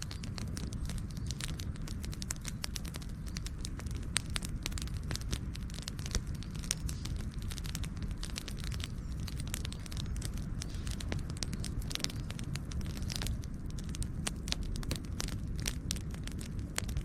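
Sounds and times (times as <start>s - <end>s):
campfire crackling and popping: 0.0s - 17.0s
low rumble of fire: 0.0s - 17.0s.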